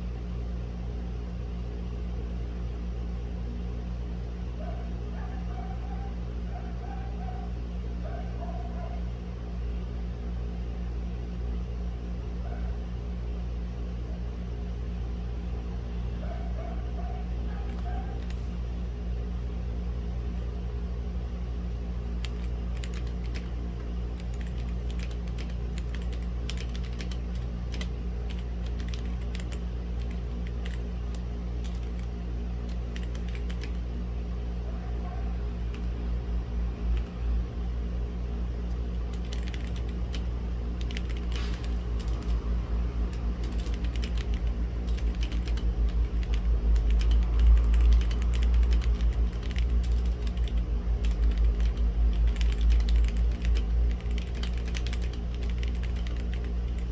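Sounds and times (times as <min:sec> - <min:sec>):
steady low hum: 0:00.0 - 0:56.9
mechanical keyboard typing: 0:17.6 - 0:18.6, 0:22.1 - 0:33.8, 0:35.7 - 0:36.0, 0:37.0 - 0:37.2, 0:38.7 - 0:42.4, 0:43.1 - 0:56.9.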